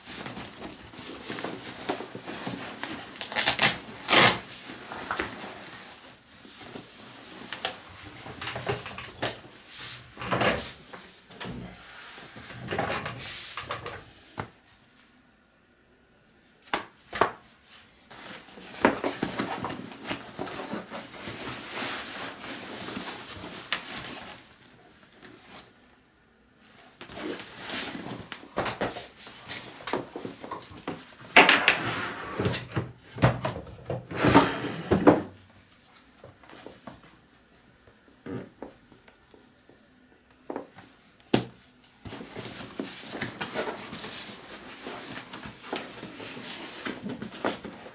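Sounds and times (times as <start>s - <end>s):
fabric rustling and scraping: 0.0s - 11.1s, 17.7s - 25.9s, 26.6s - 32.6s, 40.7s - 47.9s.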